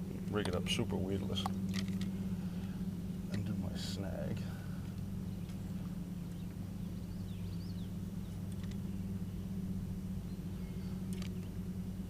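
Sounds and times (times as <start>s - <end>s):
steady low hum: 0.0s - 12.0s
small bird chirping: 5.2s - 9.4s, 10.2s - 11.6s
small sharp clicks: 8.4s - 8.8s, 11.1s - 11.5s.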